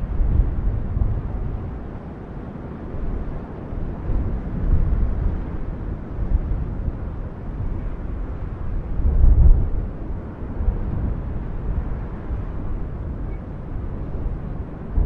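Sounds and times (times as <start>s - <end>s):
volcano rumbling: 0.0s - 15.0s.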